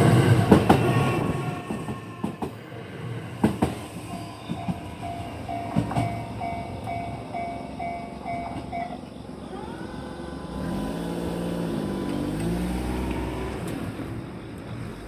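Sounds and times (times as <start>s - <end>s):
level-crossing warning bell: 2.3s - 9.3s
vehicle engine revving: 10.4s - 14.0s.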